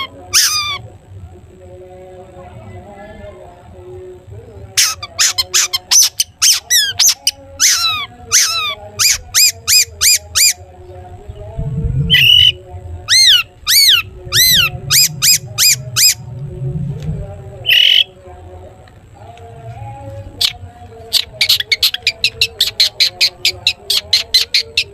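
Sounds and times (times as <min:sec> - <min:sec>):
harsh rasping bird notes: 0:11.6 - 0:18.2
bird singing high repeated notes: 0:12.0 - 0:16.3.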